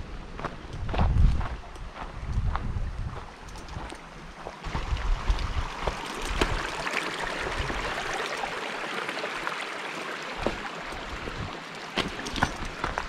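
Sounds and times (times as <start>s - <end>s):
creek water flowing over rocks: 3.5s - 13.0s.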